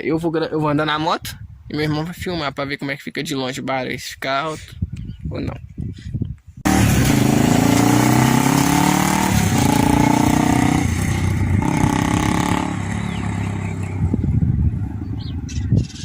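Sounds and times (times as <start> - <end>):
motorcycle accelerating: 6.6 - 15.6.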